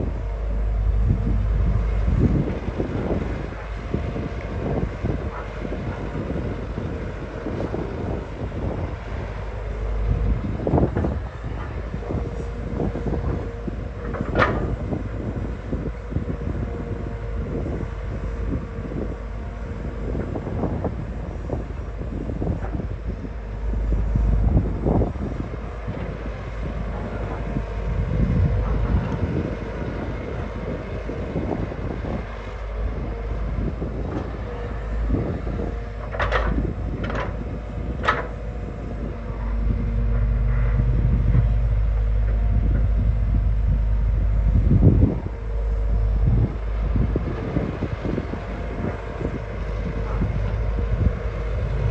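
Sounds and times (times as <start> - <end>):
constant whine: 0.0 - 51.9
excavator diesel engine running: 0.0 - 51.9
machine knocks and clatter: 10.1 - 15.9, 33.5 - 43.8.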